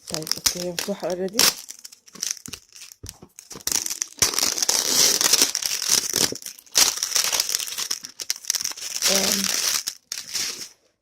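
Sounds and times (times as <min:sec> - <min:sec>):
packaging crinkling and rustling: 0:00.0 - 0:10.8.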